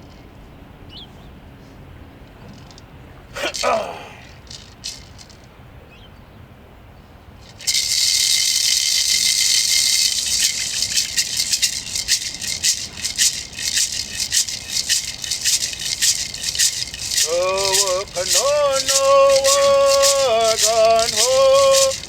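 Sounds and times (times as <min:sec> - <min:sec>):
hand rattle shaking: 0:03.4 - 0:05.5, 0:07.4 - 0:22.0.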